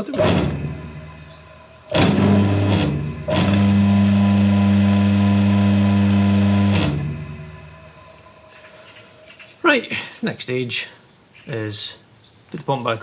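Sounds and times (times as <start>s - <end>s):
electric motor humming: 0.0s - 9.2s
contactor clicking: 0.0s - 9.6s.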